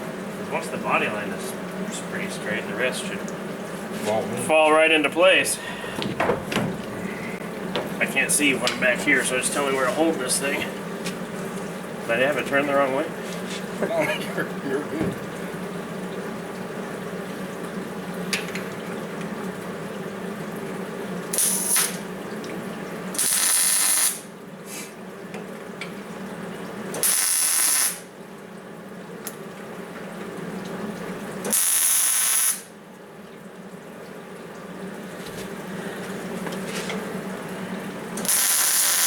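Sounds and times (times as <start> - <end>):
welder hum: 21.3 - 22.0, 23.1 - 24.3, 27.0 - 28.0, 31.5 - 32.7, 38.2 - 39.0
stud welder hissing: 21.4 - 22.0, 23.2 - 24.9, 27.0 - 28.0, 31.5 - 32.6, 38.2 - 39.0.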